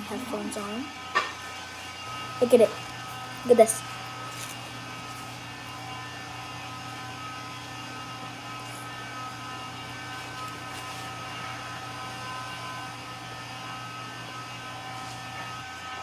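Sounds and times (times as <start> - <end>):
thin steady tones: 0.0 - 8.0
electrical hum: 0.0 - 16.0.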